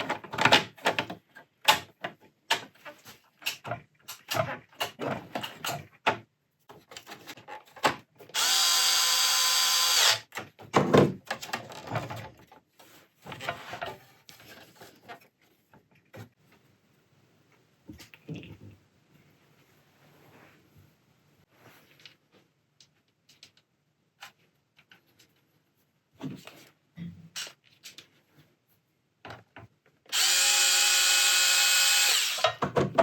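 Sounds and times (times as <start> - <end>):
small electric motor running: 8.4 - 10.2, 30.2 - 32.4.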